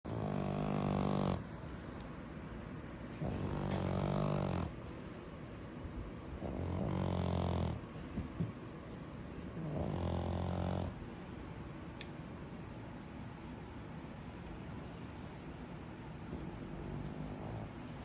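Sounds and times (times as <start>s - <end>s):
person snoring: 0.1s - 1.5s, 3.2s - 4.8s, 6.4s - 7.8s, 9.6s - 11.0s
quiet breaths: 0.1s - 18.0s.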